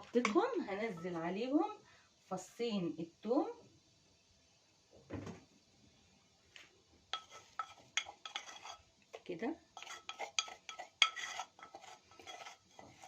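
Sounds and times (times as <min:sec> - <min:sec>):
metal spoon clinking on pot: 0:07.2 - 0:08.8, 0:09.8 - 0:12.6.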